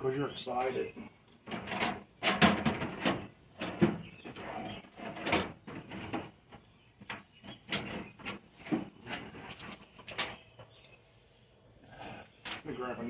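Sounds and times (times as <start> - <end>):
parts clicking and rattling: 1.4 - 10.8, 12.3 - 13.0.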